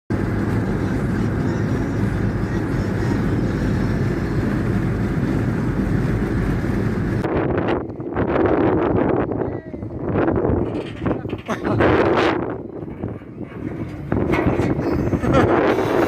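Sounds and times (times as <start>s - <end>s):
bulldozer diesel engine running: 0.1s - 16.0s.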